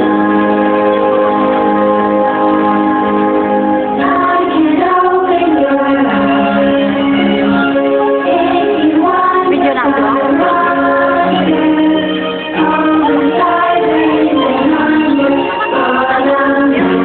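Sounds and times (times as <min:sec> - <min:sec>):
woman singing over music: 0:02.4 - 0:17.0.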